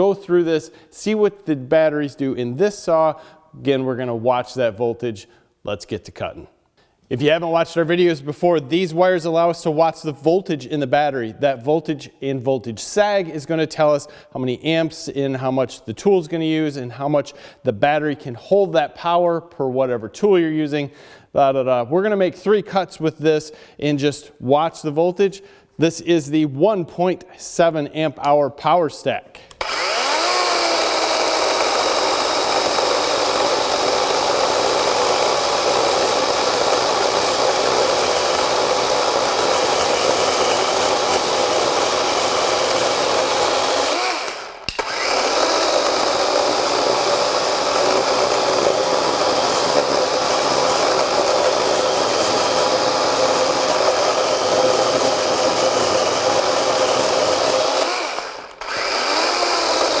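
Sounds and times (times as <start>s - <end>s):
chainsaw cutting wood: 29.5s - 60.0s.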